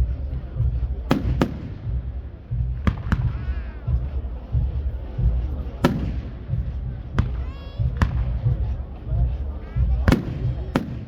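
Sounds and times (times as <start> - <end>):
continuous low rumble: 0.0 - 11.0
fireworks bangs: 1.1 - 2.2, 5.8 - 8.4.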